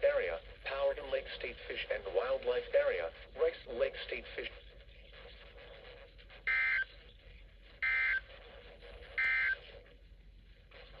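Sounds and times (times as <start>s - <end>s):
faint broadcast hiss: 0.0s - 11.0s
harsh two-tone buzzes: 6.5s - 6.8s, 7.8s - 8.2s, 9.2s - 9.6s.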